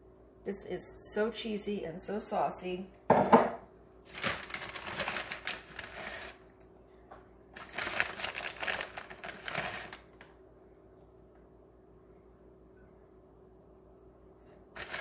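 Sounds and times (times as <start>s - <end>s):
rapid clicking and rustling: 7.6s - 10.3s.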